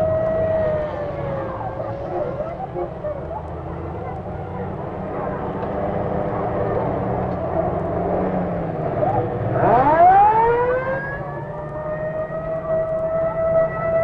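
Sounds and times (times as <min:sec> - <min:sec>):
mechanical siren wailing: 0:00.0 - 0:03.0, 0:09.0 - 0:14.0.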